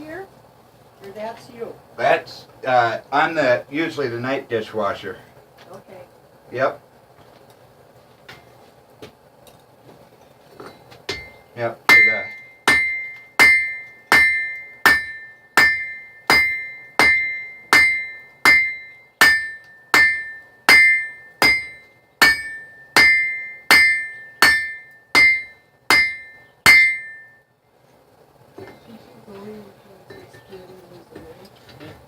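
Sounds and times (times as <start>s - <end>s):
hammer striking steel on anvil: 11.1s - 27.4s.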